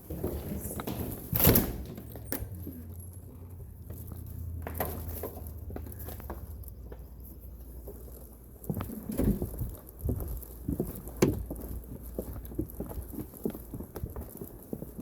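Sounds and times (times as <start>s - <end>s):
footsteps walking: 3.8s - 15.0s.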